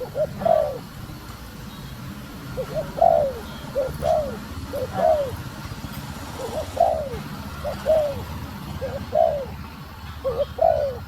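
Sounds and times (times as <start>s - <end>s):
dove cooing: 0.0s - 1.0s, 2.5s - 5.6s, 6.2s - 11.0s.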